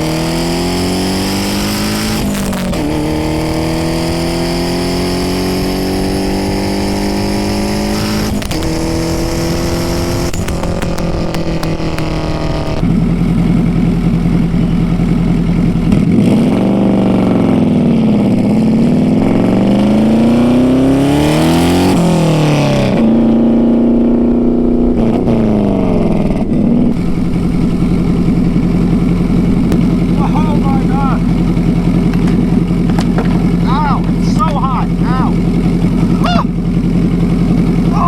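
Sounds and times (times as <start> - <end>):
car engine revving: 0.0 - 38.0.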